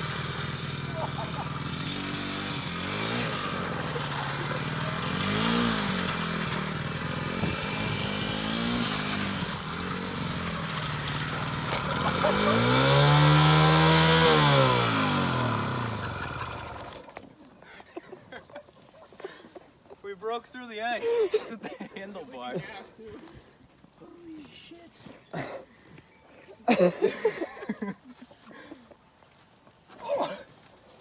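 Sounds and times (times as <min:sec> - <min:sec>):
dirt bike engine revving: 0:00.0 - 0:17.2.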